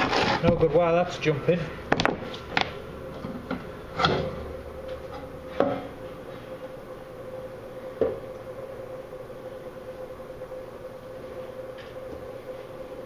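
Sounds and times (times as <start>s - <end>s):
steady hum: 0.0s - 13.0s.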